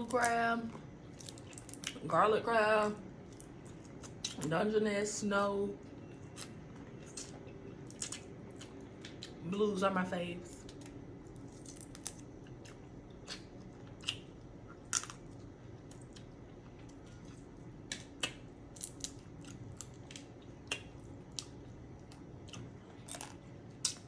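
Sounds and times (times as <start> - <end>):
chewing: 5.9 - 9.4, 10.5 - 24.0
crab shell cracking: 10.6 - 12.3.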